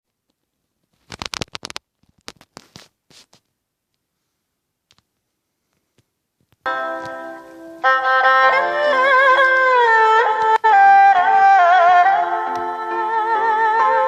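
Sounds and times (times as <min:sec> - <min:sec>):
instrumental music: 0:06.7 - 0:14.0.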